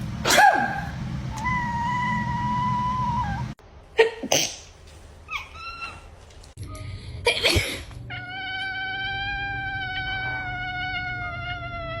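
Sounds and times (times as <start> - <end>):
person coughing: 7.2 - 7.9.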